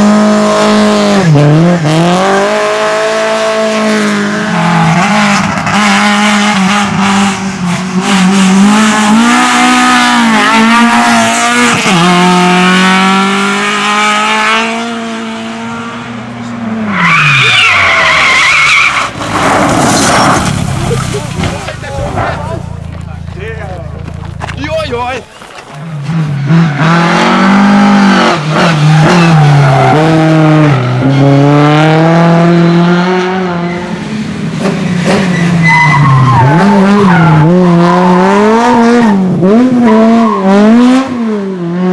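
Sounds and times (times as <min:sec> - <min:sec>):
rally car engine revving: 0:00.0 - 0:41.9
tyres squealing: 0:16.9 - 0:26.4.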